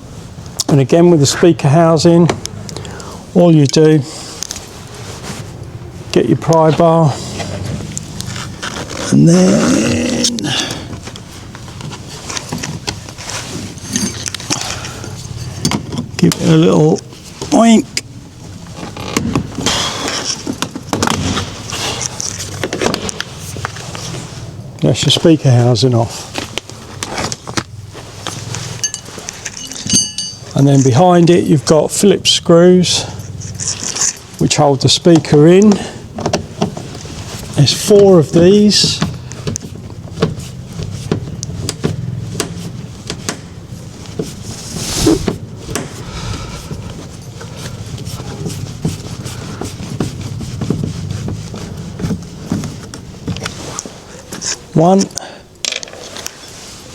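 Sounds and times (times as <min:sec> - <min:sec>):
rustling scrape: 0:04.1 - 0:09.2, 0:11.0 - 0:15.7, 0:18.4 - 0:24.6, 0:25.3 - 0:31.4, 0:36.8 - 0:54.7, 0:56.0 - 0:56.9.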